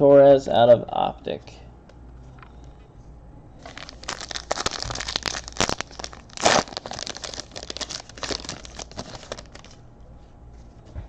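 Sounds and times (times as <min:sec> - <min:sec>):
foil wrapper crinkling: 0:03.6 - 0:09.8.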